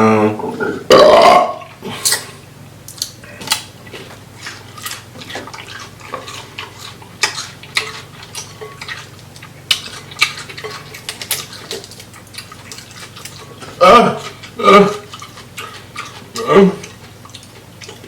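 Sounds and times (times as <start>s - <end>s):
wet squelches of eating: 1.6s - 18.0s
shellfish cracking and clicking: 2.9s - 3.7s.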